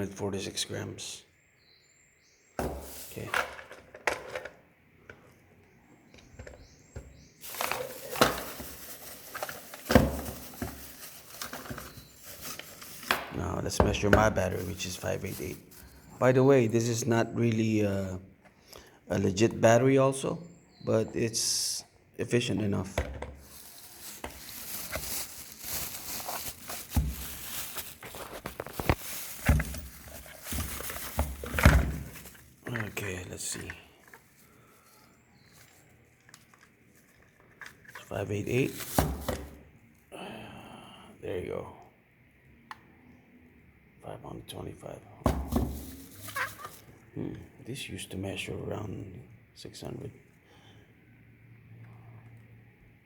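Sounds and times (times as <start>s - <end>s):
rustling handling noise: 2.6s - 17.7s, 22.3s - 40.1s, 45.3s - 47.2s.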